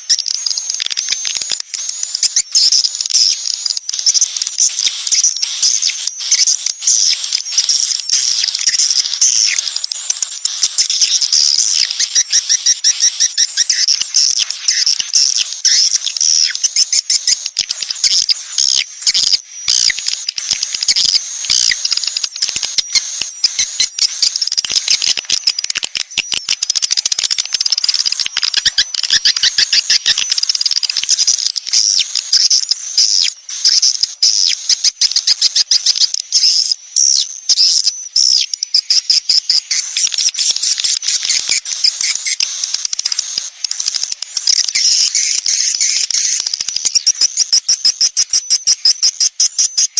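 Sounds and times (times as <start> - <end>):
swiftlets twittering: 5.6 - 34.6.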